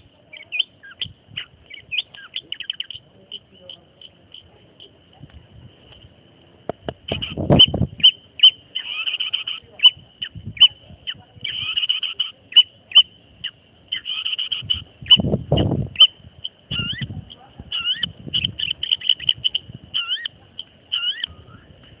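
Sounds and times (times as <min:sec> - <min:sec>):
bird chipping and chattering: 0:00.0 - 0:05.3, 0:06.7 - 0:22.0
low rumbles: 0:14.6 - 0:22.0.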